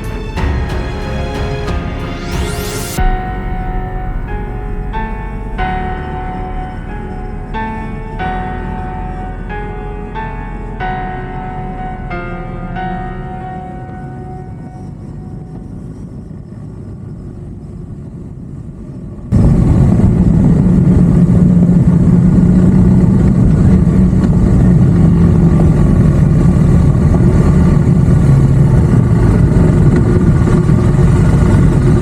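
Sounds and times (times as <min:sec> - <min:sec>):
rushing wind noise: 0:18.7 - 0:32.0.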